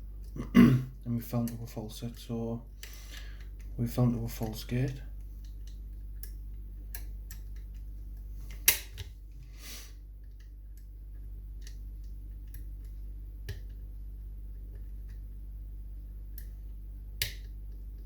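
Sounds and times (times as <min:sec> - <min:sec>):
low steady hum: 0:00.0 - 0:18.0
brief scrape: 0:09.5 - 0:10.0.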